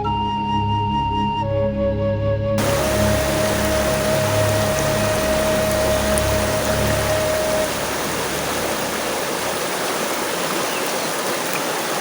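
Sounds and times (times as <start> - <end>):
low rumble: 2.6 - 9.6
flowing water rushing: 2.6 - 12.0.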